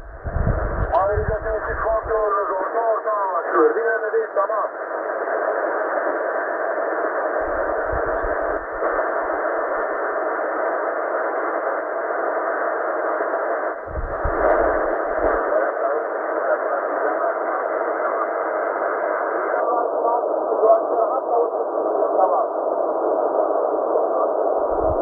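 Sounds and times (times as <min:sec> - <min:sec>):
radio static hiss: 0:00.0 - 0:25.0
low rumbling bursts: 0:07.4 - 0:09.5, 0:13.9 - 0:15.5.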